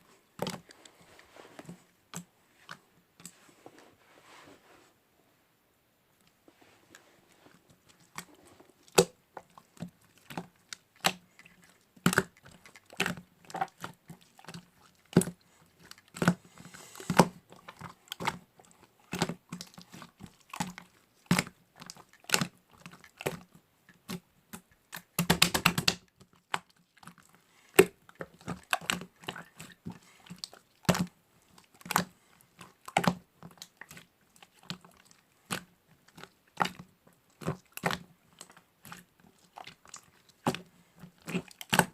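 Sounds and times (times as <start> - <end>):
slime clicking and popping: 8.9 - 9.2, 12.0 - 15.4, 24.0 - 26.7, 30.3 - 31.1, 32.9 - 34.8.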